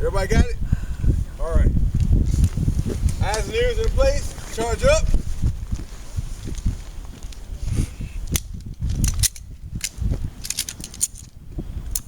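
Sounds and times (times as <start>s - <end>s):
wind buffeting microphone: 0.0s - 12.0s
pistol loading clicks: 8.3s - 11.3s.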